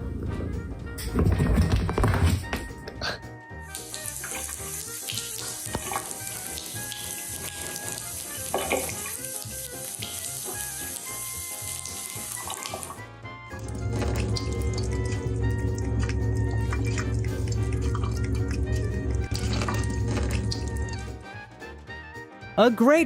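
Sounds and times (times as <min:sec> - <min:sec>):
background music: 0:00.0 - 0:23.0
water running from a tap: 0:03.7 - 0:21.3.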